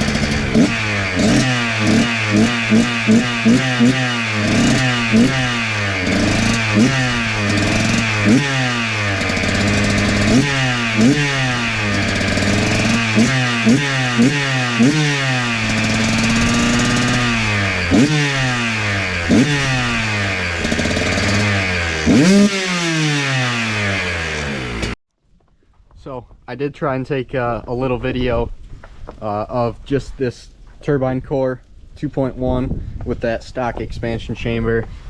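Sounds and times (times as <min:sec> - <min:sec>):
two-stroke engine revving: 0:00.0 - 0:25.0.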